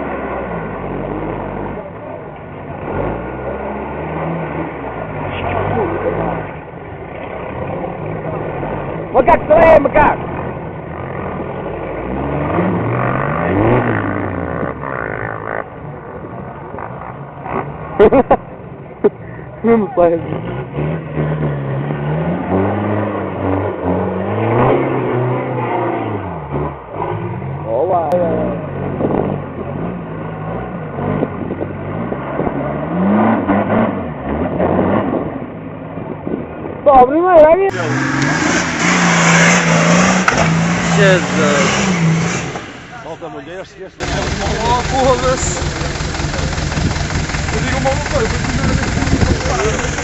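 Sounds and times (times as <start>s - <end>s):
off-road vehicle engine revving: 0.0s - 50.0s
vehicle knocks and clatter: 44.0s - 50.0s.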